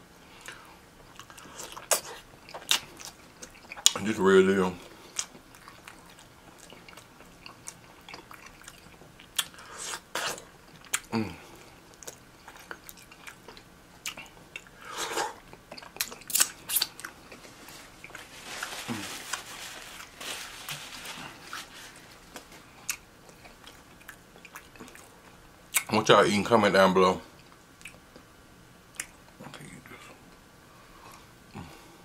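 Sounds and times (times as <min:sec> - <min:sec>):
person chewing: 0:00.4 - 0:04.0, 0:04.8 - 0:25.9.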